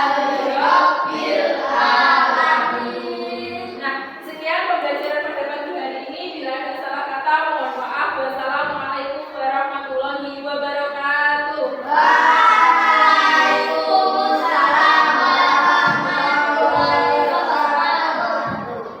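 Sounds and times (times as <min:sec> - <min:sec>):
group of voices singing: 0:00.0 - 0:03.8, 0:11.8 - 0:19.0.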